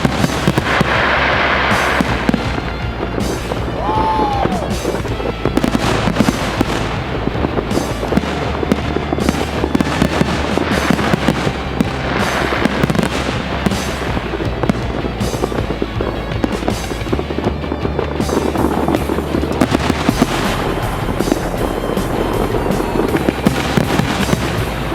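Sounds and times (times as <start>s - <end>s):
fireworks crackling and banging: 0.0s - 24.9s.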